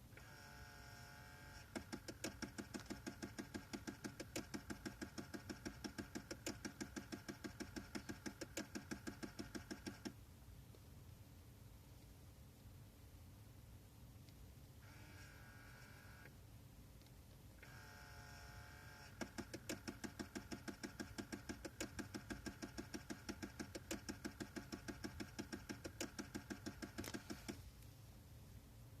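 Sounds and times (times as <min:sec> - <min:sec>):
small electric motor whining: 0:00.2 - 0:10.1, 0:14.8 - 0:16.3, 0:17.6 - 0:27.6
rapid even clicking: 0:01.7 - 0:10.2, 0:19.1 - 0:27.6.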